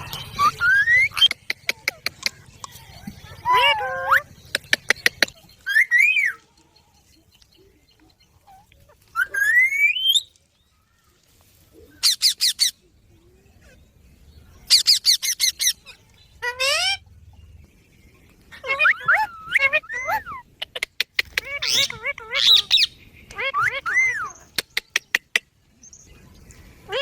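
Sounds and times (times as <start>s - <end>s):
parakeets calling: 0.0s - 6.4s, 14.6s - 17.6s, 18.5s - 25.5s.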